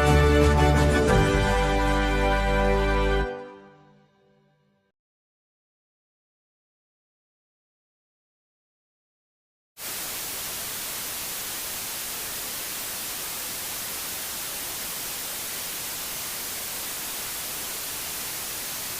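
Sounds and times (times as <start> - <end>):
television static hiss: 9.8 - 18.9.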